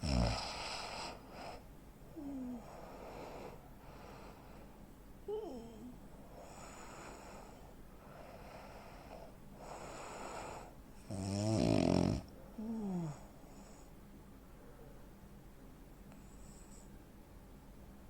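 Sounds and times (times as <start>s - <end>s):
falling snort: 0.0s - 1.2s
man snoring heavily: 0.0s - 1.2s, 11.1s - 12.3s
faint noisy breaths: 0.0s - 15.2s, 16.0s - 17.8s.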